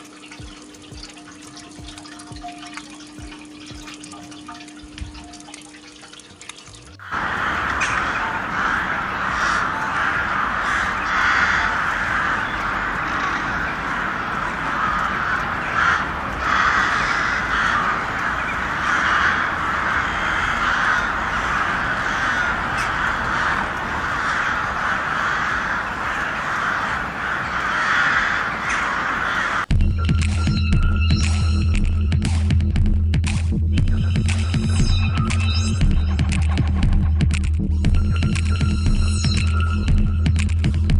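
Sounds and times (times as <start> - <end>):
flock of birds calling: 7.0 - 29.7.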